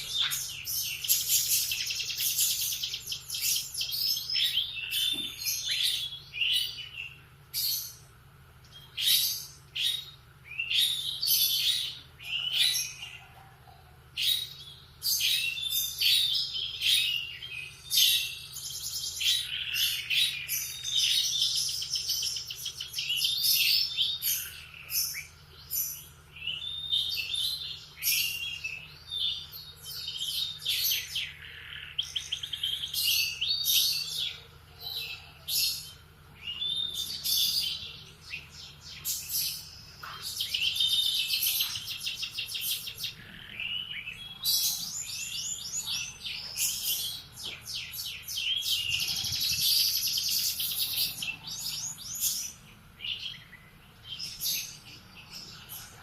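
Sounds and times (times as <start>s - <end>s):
canary singing trills and chirps: 0.0s - 56.0s.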